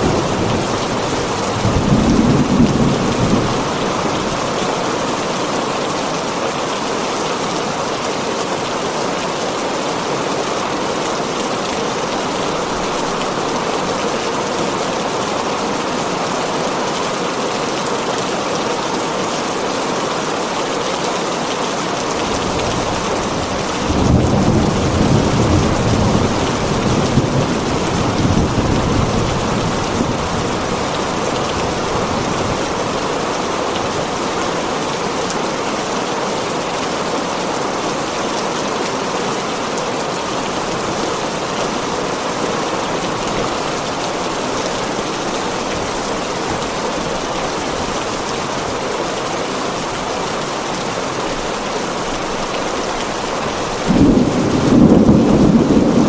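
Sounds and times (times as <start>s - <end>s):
thunder rumbling: 0.0s - 4.6s, 53.6s - 56.0s
heavy rain on a tin roof: 0.0s - 56.0s.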